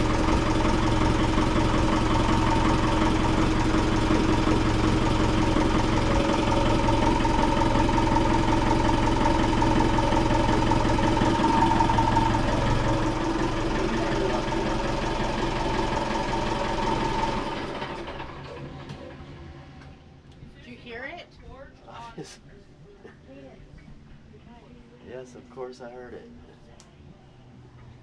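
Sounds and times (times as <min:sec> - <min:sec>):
steady whine: 0:00.0 - 0:19.1
diesel engine running: 0:00.0 - 0:19.5.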